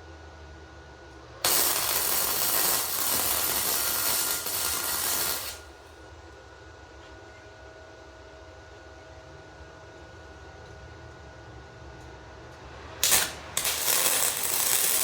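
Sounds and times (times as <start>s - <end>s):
welding arc: 1.4s - 5.7s, 13.0s - 15.0s.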